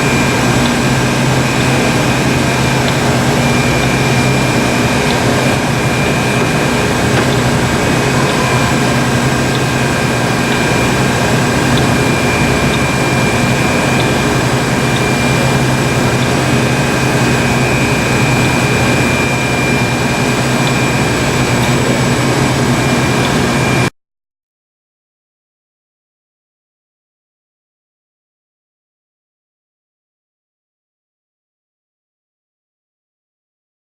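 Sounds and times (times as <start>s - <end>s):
high-pitched gear whine: 0.0s - 23.9s
lathe motor humming: 0.0s - 23.9s.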